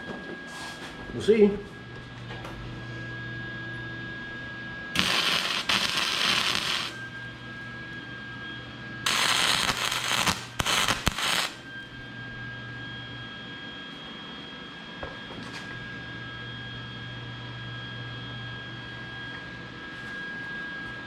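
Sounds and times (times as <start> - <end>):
steady low hum: 1.8 - 13.2
arc welding crackling sizzle: 5.0 - 7.3, 9.1 - 11.7.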